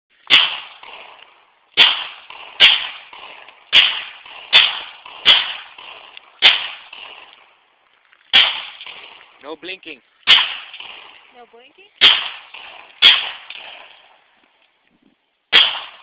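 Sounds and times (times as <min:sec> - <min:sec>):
pistol shots with echo: 0:00.2 - 0:07.6, 0:08.3 - 0:09.4, 0:10.2 - 0:11.4, 0:12.0 - 0:14.2, 0:15.5 - 0:16.0.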